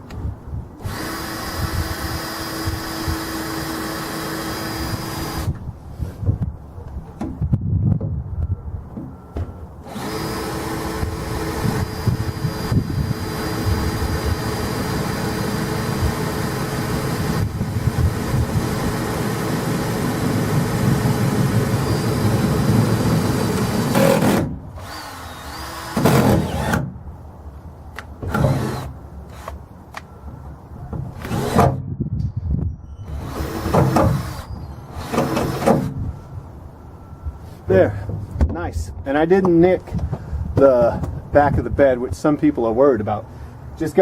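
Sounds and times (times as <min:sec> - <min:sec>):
power drill boring: 0:00.8 - 0:05.5, 0:09.8 - 0:26.8, 0:28.3 - 0:29.6, 0:33.1 - 0:35.8.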